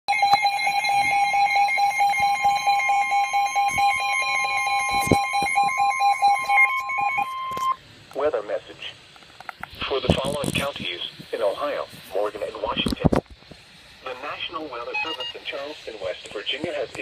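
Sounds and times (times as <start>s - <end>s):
rapidly pulsing beep: 0.1s - 7.8s, 14.9s - 15.6s
steady alarm tone: 0.1s - 7.8s, 14.9s - 15.6s.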